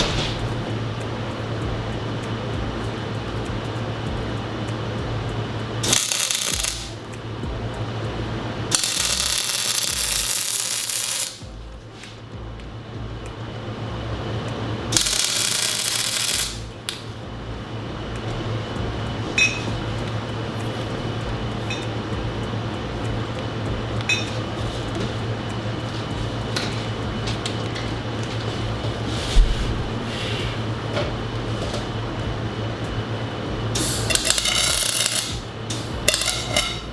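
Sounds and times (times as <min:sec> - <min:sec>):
welding arc crackling: 0:00.0 - 0:12.4, 0:13.2 - 0:36.9
steady low hum: 0:00.0 - 0:36.9.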